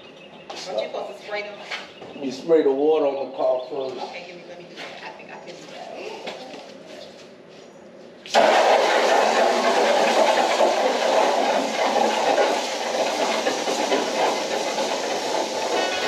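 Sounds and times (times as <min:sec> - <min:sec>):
water spraying onto car: 0:08.3 - 0:16.0.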